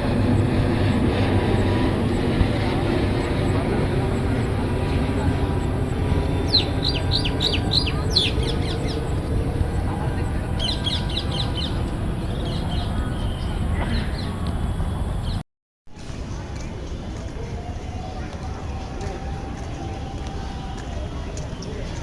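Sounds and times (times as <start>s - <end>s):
low outdoor rumble: 0.0s - 22.0s
bird chirping: 6.4s - 9.1s, 10.6s - 14.3s.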